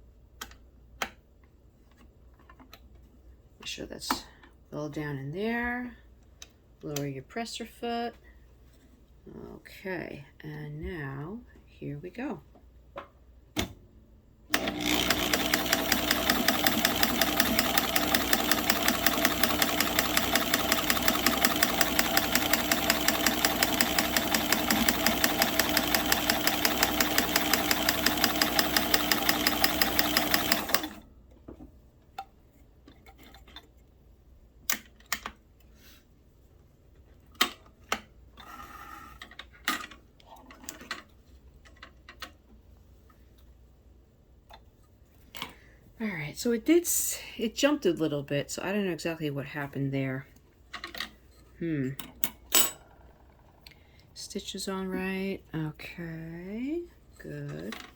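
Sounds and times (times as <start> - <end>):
sewing machine stitching: 14.5 - 31.0.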